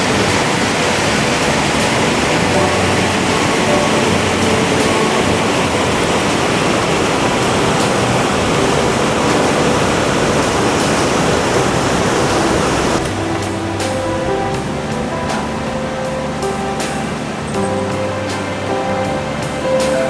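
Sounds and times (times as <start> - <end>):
stream rushing over rocks: 0.0 - 20.0.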